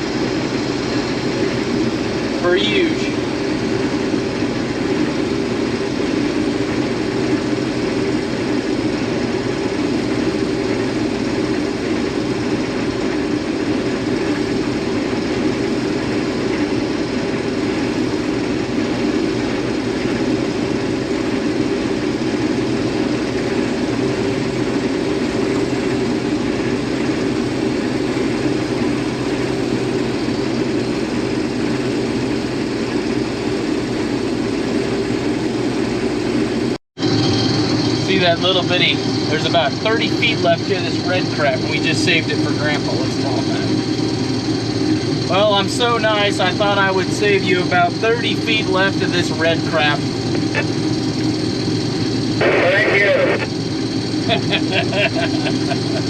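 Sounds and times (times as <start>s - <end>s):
combine harvester droning: 0.0s - 56.0s.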